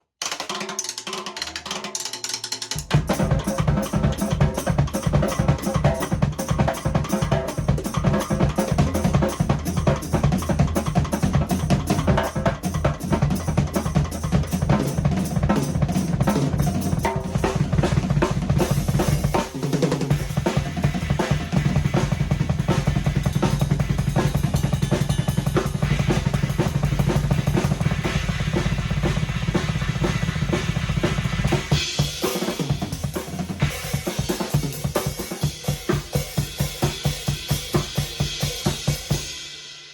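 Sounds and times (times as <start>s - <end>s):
fast drum kit playing: 0.2s - 39.9s
cymbal wash: 20.1s - 39.9s.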